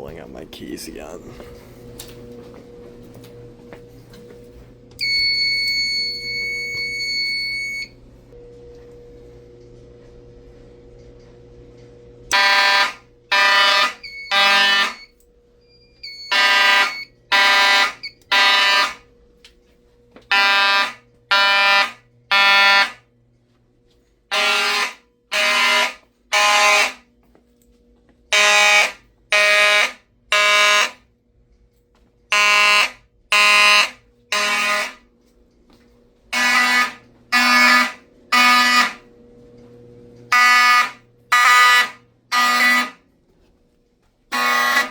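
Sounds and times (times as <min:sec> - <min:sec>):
fire alarm buzzy blasts: 0:04.5 - 0:08.2, 0:12.3 - 0:19.2, 0:20.3 - 0:23.1, 0:24.3 - 0:27.1, 0:28.3 - 0:31.1, 0:32.3 - 0:35.1, 0:36.3 - 0:39.1, 0:40.3 - 0:43.1, 0:44.3 - 0:44.9.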